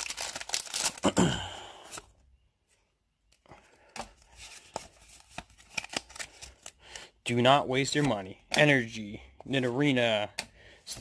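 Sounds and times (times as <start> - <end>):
cards rustling and clicking: 0.0 - 1.0, 3.3 - 7.0, 7.7 - 11.0
foil wrapper tearing and crinkling: 0.0 - 1.1.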